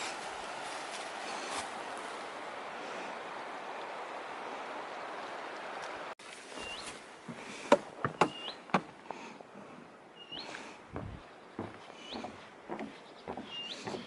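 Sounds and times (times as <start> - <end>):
steady rushing hiss: 0.0 - 3.2.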